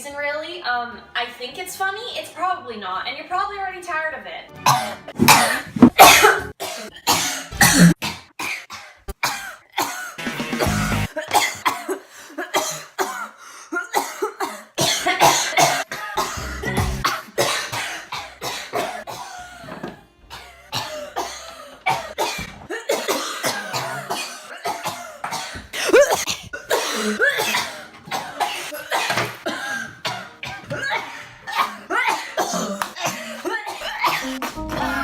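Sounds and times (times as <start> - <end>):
background music: 0.0 - 7.9, 9.9 - 11.2, 15.9 - 22.7, 26.8 - 35.0
woman coughing: 4.6 - 10.2, 11.2 - 34.6.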